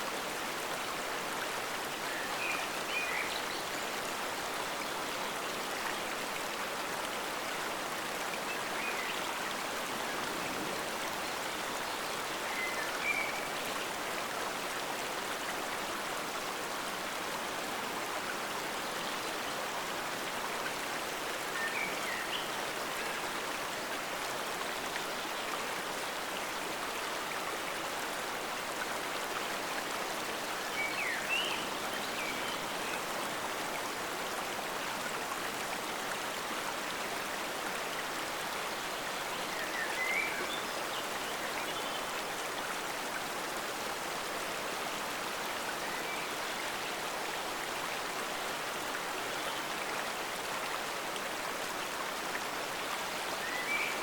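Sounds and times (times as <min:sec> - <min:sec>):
stream flowing: 0:00.0 - 0:54.0.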